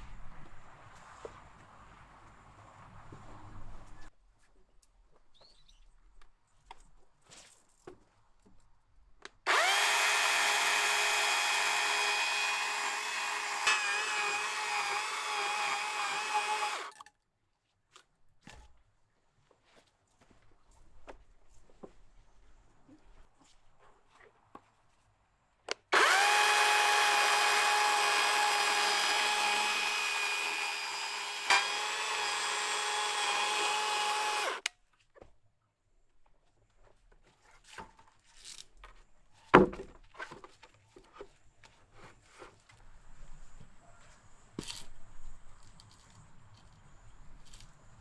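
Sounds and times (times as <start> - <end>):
handheld power tool running: 9.5 - 17.0, 26.0 - 34.7.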